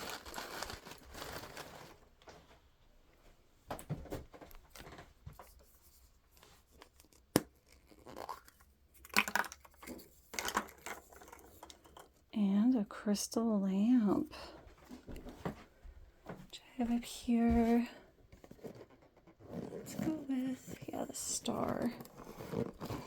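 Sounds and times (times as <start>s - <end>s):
packaging rustling and tearing: 0.0s - 2.1s, 19.4s - 23.0s.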